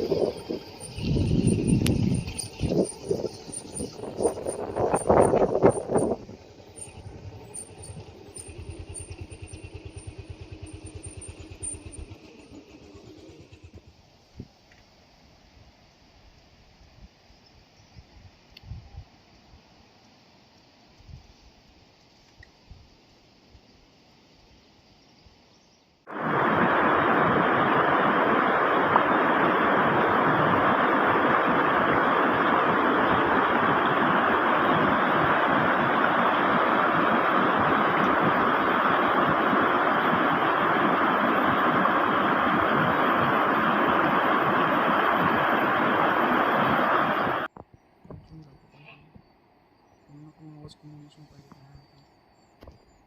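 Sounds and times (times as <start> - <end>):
small engine idling: 0.0 - 14.8
waterfall rushing: 26.1 - 47.5.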